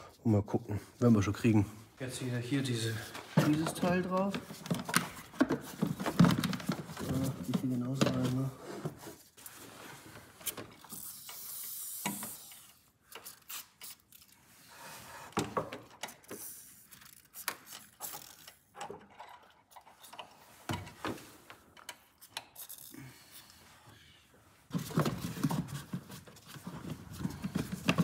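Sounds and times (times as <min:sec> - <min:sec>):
plastic rubbing and scraping: 0:02.6 - 0:14.0, 0:24.6 - 0:28.0
plastic parts clicking and knocking: 0:03.3 - 0:08.5, 0:15.4 - 0:22.9, 0:24.7 - 0:28.0.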